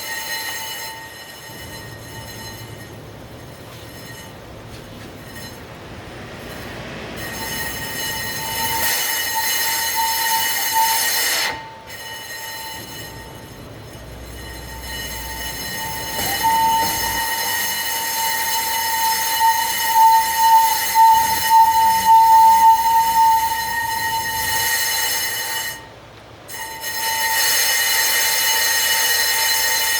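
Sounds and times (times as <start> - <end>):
brakes squealing: 0.0 - 29.9.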